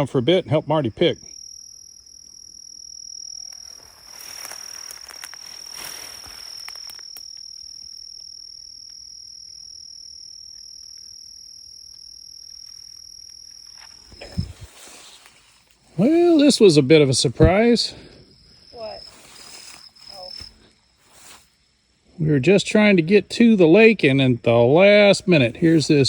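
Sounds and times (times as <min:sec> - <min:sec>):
insect singing high note: 0:01.2 - 0:20.6
rustling of brush and leaves: 0:03.2 - 0:09.1, 0:11.8 - 0:22.0.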